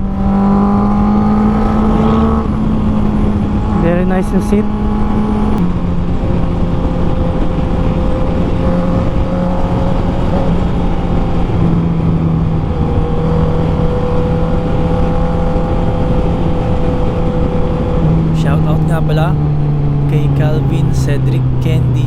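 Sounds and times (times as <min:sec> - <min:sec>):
motorcycle engine cruising: 0:00.0 - 0:11.9.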